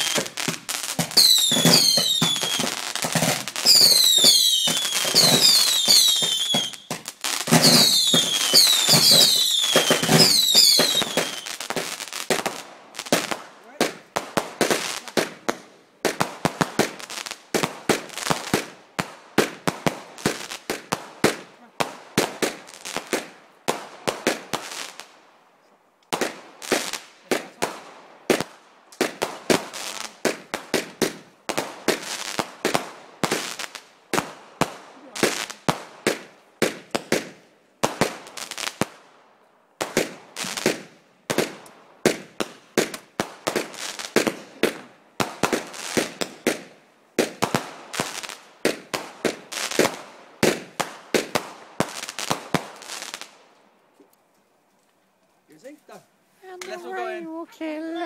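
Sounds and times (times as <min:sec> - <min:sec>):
firework barrage bangs: 0:00.0 - 0:12.5.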